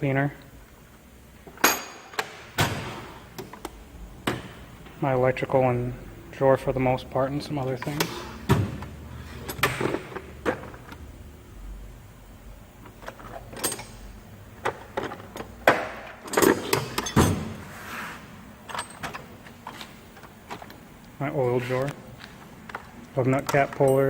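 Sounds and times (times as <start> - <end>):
tools clinking: 1.4 - 2.4, 12.9 - 15.5, 16.2 - 17.5, 18.7 - 20.8, 22.7 - 24.0
metal drawers sliding and shutting: 1.5 - 3.6, 7.8 - 11.0, 14.6 - 20.7.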